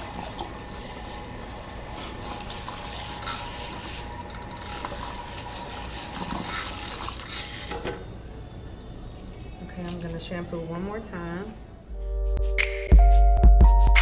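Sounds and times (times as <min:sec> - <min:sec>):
wet hair rinsed under water: 0:00.0 - 0:07.8
tap water running into sink: 0:00.0 - 0:08.0.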